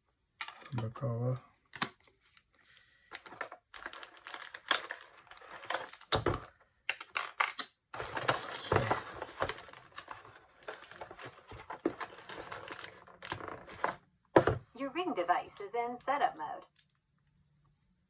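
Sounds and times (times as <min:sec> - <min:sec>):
plastic clicks and scraping: 0:03.1 - 0:14.6
plastic snaps: 0:06.0 - 0:07.8.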